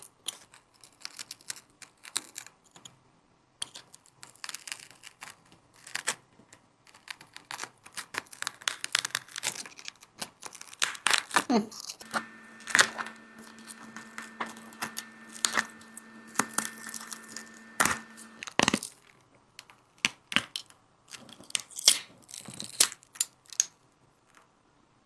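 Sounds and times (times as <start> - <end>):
steady hum: 12.0 - 18.5.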